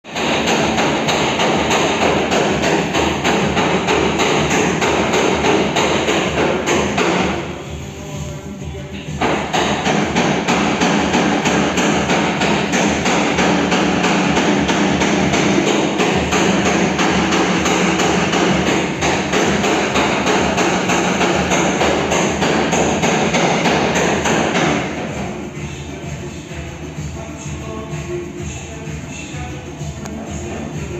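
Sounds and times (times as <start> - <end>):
hammer tapping on car panel: 0.1 - 7.5, 9.2 - 25.2
background music: 0.1 - 30.9.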